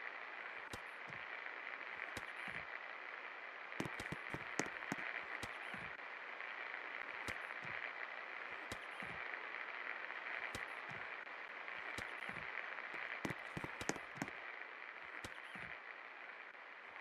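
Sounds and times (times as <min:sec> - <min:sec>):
sharp clicks: 0:03.8 - 0:05.7, 0:13.0 - 0:14.3.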